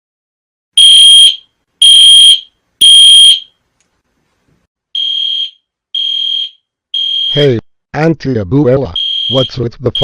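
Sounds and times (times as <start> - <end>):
fire alarm beeps: 0.8 - 3.5, 5.0 - 7.4, 9.0 - 10.0.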